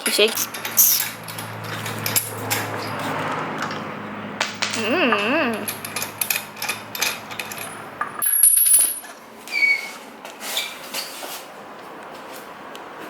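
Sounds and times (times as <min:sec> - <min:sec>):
metallic clinks and jingles: 0:00.0 - 0:03.3, 0:04.7 - 0:09.2
background hum: 0:00.0 - 0:09.5.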